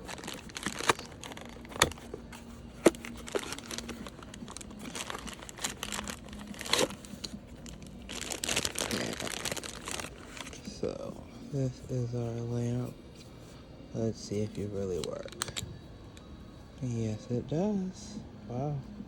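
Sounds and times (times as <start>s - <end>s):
packaging crinkling and tearing: 0.0s - 10.7s.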